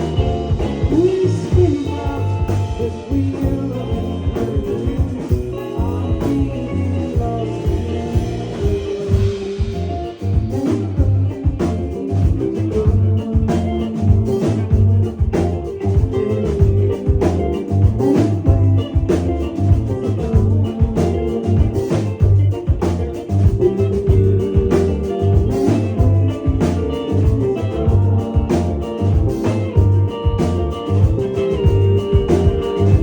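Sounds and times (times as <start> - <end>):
live band playing: 0.0 - 33.0.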